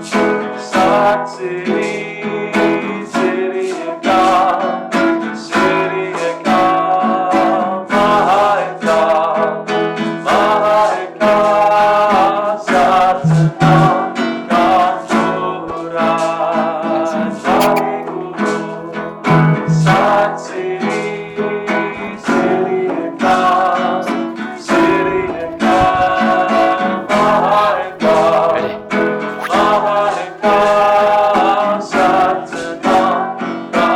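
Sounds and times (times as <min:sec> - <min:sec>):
person singing: 0:10.3 - 0:33.9
acoustic guitar strumming: 0:11.3 - 0:33.9.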